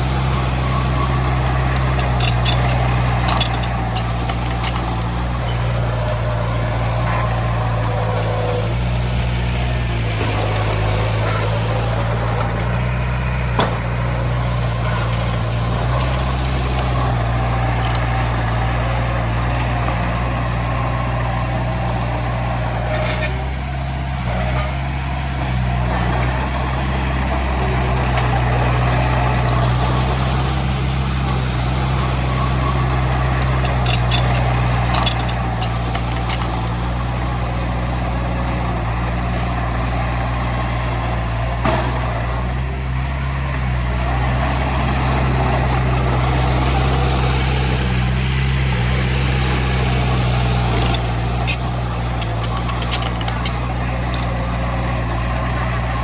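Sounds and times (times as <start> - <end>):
heavy diesel engine under load: 0.0 - 56.0
metallic clanks: 0.2 - 14.1, 14.8 - 20.8, 26.3 - 37.2, 45.6 - 55.8
high squeaks: 31.3 - 36.7, 46.7 - 55.0.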